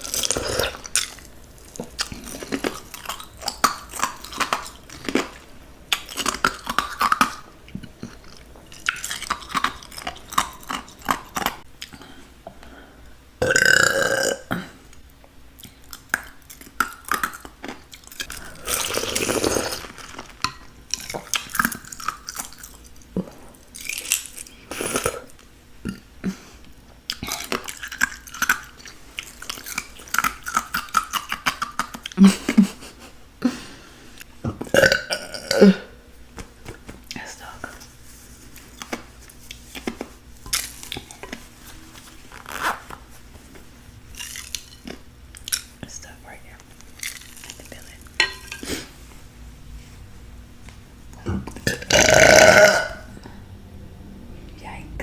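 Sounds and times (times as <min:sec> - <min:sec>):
chewing and mouth clicks: 0:00.0 - 0:12.0, 0:15.6 - 0:24.6, 0:27.1 - 0:32.2, 0:44.1 - 0:45.8, 0:46.8 - 0:48.1
loud burp: 0:13.4 - 0:14.7, 0:34.5 - 0:36.0, 0:51.2 - 0:53.1.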